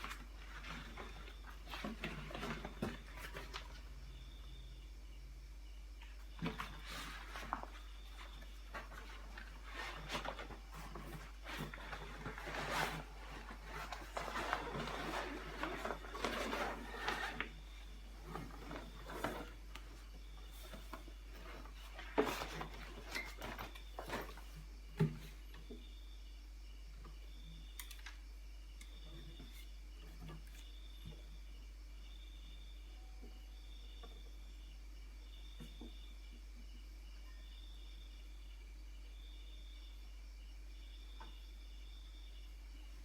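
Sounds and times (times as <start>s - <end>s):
packaging rustling and crinkling: 6.4s - 24.6s.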